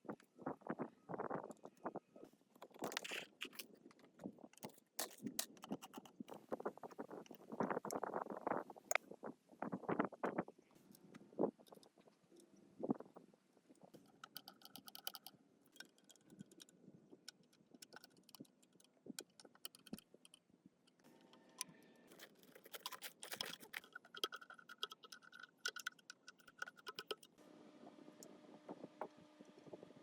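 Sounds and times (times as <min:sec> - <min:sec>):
hand tools clicking on metal parts: 0:22.1 - 0:27.3
rapid ticking: 0:22.2 - 0:27.3.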